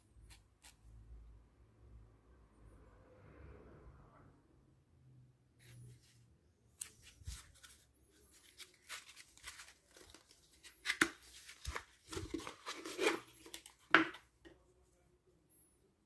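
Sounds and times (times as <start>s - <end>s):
rustling and scraping: 6.8s - 14.0s.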